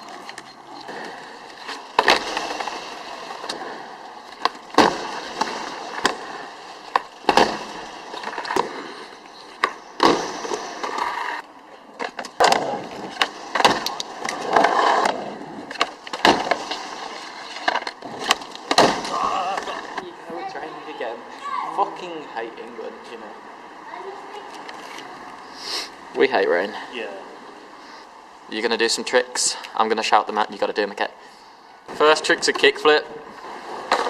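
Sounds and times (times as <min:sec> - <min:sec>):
skateboard rolling: 0:00.0 - 0:20.4, 0:31.9 - 0:34.0
skateboard pops and landing slaps: 0:01.7 - 0:08.9, 0:09.6 - 0:11.4, 0:12.0 - 0:20.0, 0:33.8 - 0:34.0.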